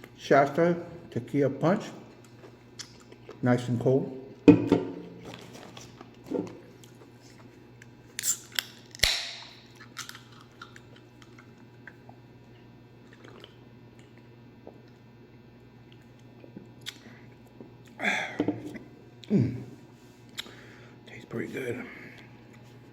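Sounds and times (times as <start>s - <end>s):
person chewing food: 2.2s - 3.4s, 13.0s - 15.0s, 15.8s - 18.0s
sharp snap: 9.0s - 9.5s.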